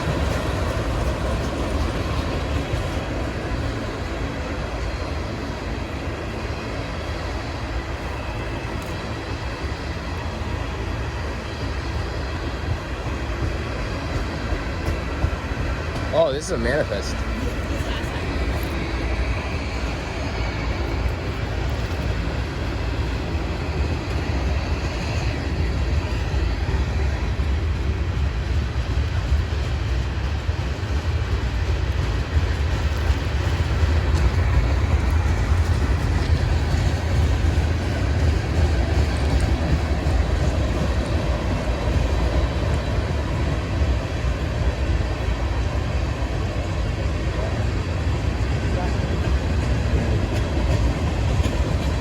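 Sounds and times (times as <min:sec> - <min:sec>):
freight train rumbling on rails: 0:00.0 - 0:52.0.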